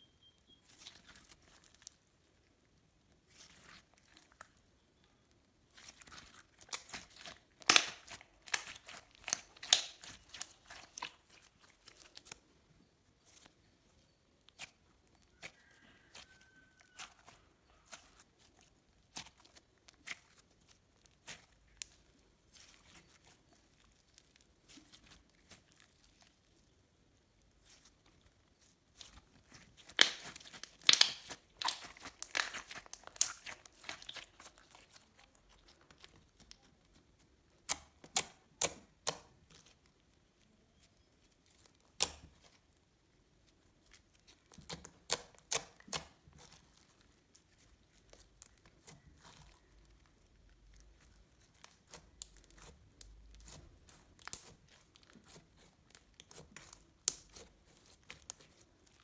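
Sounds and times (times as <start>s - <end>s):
slime clicking and popping: 5.9s - 12.4s, 29.8s - 35.0s, 37.6s - 39.8s, 41.7s - 42.5s, 44.4s - 46.5s, 51.6s - 58.6s.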